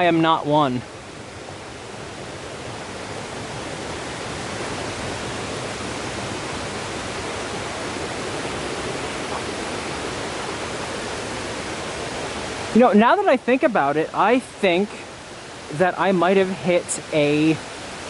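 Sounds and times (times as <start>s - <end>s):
flowing water rushing: 0.0s - 18.0s.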